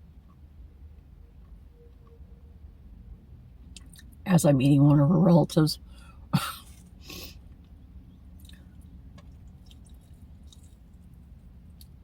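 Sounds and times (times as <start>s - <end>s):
soft chewing: 6.6s - 12.0s.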